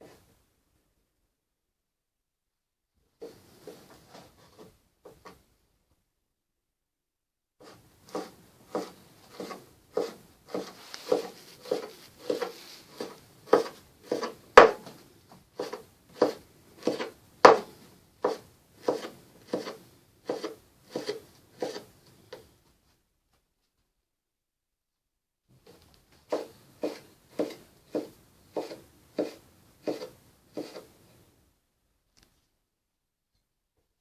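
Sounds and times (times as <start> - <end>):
knife chopping fat: 8.1 - 14.9, 15.6 - 21.9, 26.3 - 30.9.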